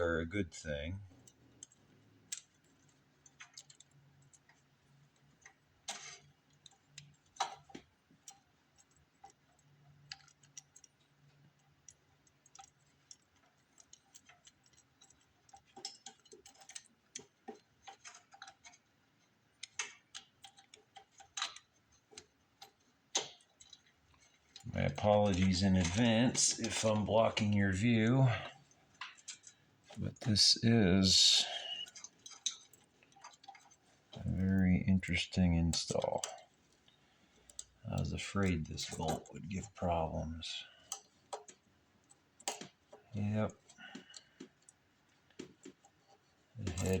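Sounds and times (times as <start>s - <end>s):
small metal parts clicking: 0.0s - 47.0s.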